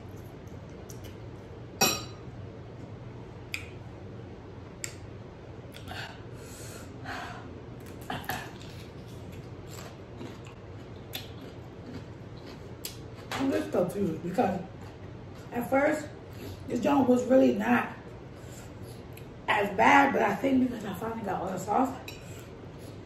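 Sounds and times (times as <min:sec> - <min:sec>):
eating noises: 0:07.8 - 0:13.3.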